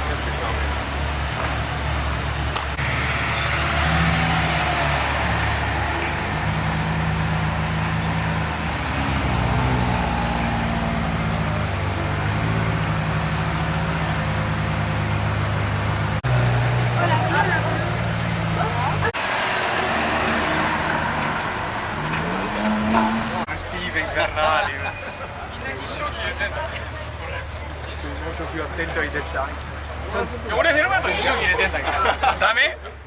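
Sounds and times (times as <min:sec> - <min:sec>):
traffic noise: 0:00.0 - 0:33.0
car engine at low revs: 0:00.1 - 0:19.3, 0:20.0 - 0:23.5.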